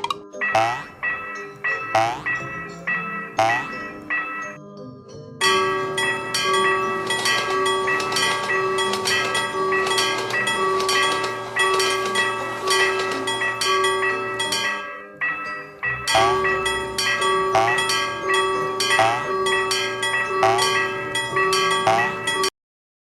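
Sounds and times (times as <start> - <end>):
railroad crossing bell clanging: 0.4 - 4.6, 5.4 - 22.5.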